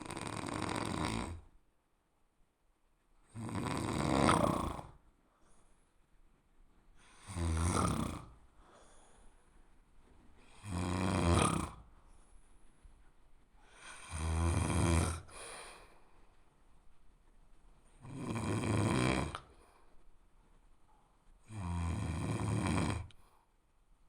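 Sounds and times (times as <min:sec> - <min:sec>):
person snoring: 0:00.0 - 0:01.5, 0:03.3 - 0:05.0, 0:07.0 - 0:08.4, 0:10.5 - 0:11.9, 0:13.7 - 0:15.6, 0:18.0 - 0:19.5, 0:21.5 - 0:23.2
quiet breathing: 0:00.0 - 0:01.6, 0:02.9 - 0:24.0.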